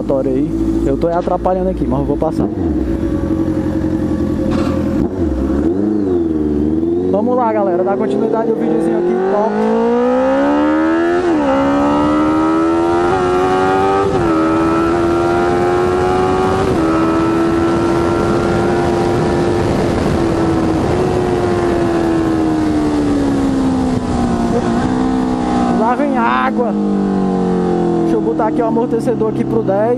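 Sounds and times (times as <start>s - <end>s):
motorcycle engine accelerating: 0.0s - 29.9s
wind rush: 15.8s - 25.8s.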